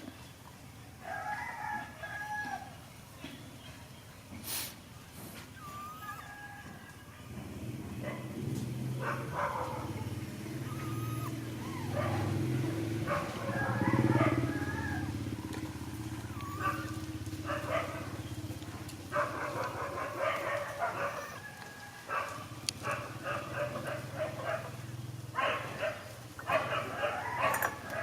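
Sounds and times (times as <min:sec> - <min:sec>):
monkeys squeaky calls: 0:05.6 - 0:06.5, 0:10.5 - 0:12.0, 0:15.4 - 0:17.2, 0:20.8 - 0:21.4.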